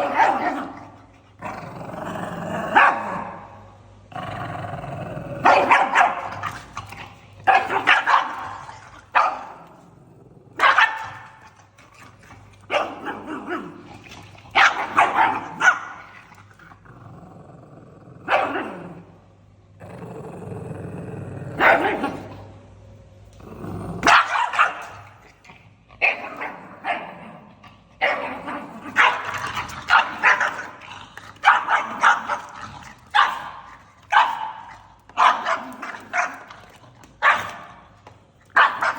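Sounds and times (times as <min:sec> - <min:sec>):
dog barking angrily: 0:00.0 - 0:03.6, 0:05.3 - 0:06.7, 0:07.4 - 0:09.8, 0:10.5 - 0:11.6, 0:12.6 - 0:16.3, 0:18.2 - 0:19.0, 0:21.5 - 0:22.3, 0:23.9 - 0:25.3, 0:26.0 - 0:27.4, 0:28.0 - 0:37.9, 0:38.5 - 0:38.9
dog growling: 0:00.0 - 0:10.6, 0:11.2 - 0:19.2, 0:19.8 - 0:22.4, 0:23.4 - 0:24.1, 0:25.2 - 0:37.0.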